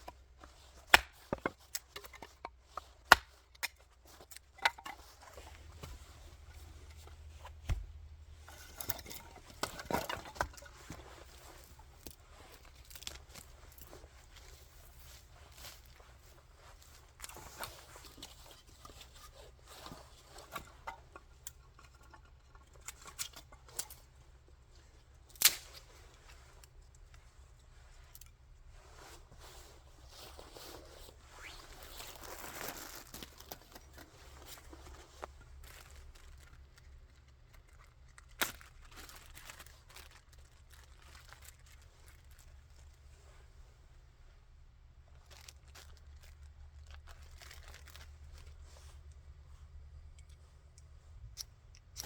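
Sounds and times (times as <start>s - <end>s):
objects rustling and clicking: 0.0s - 43.5s, 45.2s - 49.2s
faint low hum: 4.9s - 52.0s.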